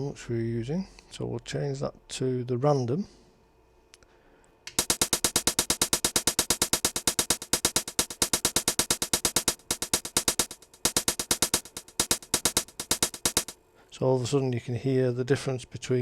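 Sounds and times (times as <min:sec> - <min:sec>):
synthesized hi-hat pattern: 0:04.7 - 0:13.6.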